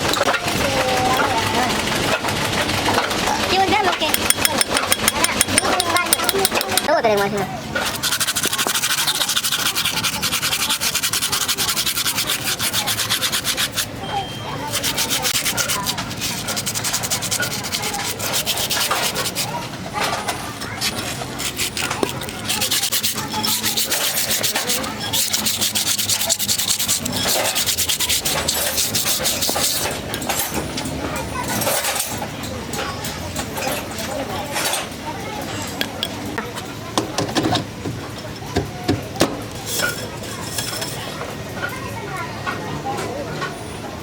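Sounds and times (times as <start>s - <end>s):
fast sanding strokes on wheel: 7.8s - 14.0s, 14.6s - 19.6s, 20.8s - 30.0s.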